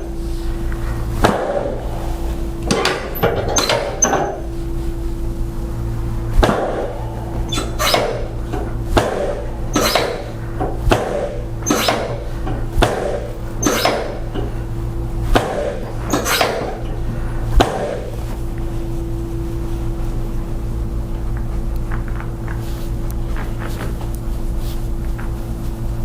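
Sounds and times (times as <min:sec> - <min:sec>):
steady low hum: 0:00.0 - 0:26.0
sharp knocks: 0:06.4 - 0:14.5.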